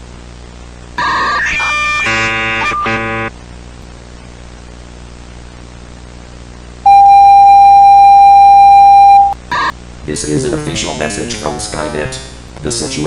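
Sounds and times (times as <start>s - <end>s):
chord of beeping tones: 6.9s - 9.4s
steady single-pitched attention tone: 6.9s - 9.7s.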